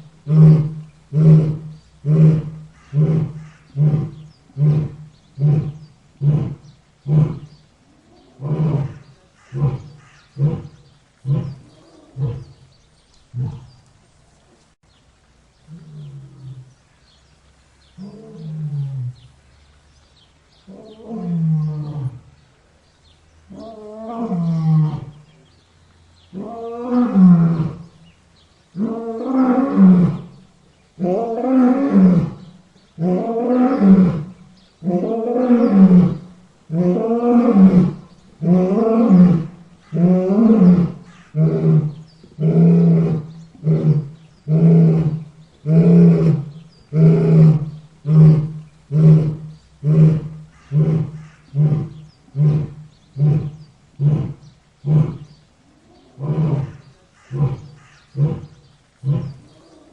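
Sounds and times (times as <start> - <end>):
lion roaring: 0.3 - 12.6, 31.0 - 59.9.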